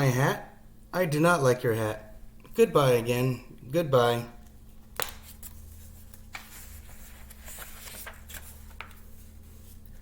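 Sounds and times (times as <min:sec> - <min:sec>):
steady low hum: 0:00.0 - 0:10.0
paper rustling: 0:04.9 - 0:10.0.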